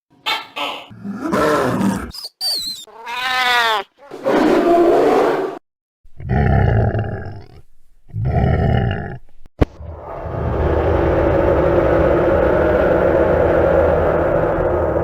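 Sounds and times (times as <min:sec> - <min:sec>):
deep monster roars: 0:00.9 - 0:02.1, 0:06.2 - 0:09.2, 0:09.8 - 0:15.0
monster cry rising and falling: 0:00.9 - 0:02.1, 0:09.8 - 0:15.0
rough growl: 0:06.2 - 0:15.0
falling whine: 0:09.6 - 0:15.0.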